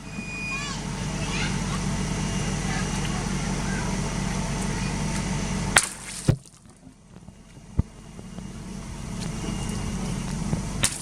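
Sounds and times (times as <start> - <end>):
car engine running: 0.0 - 11.0
steady vehicle noise: 0.0 - 11.0
sharp cracks: 5.7 - 6.7, 10.8 - 11.0.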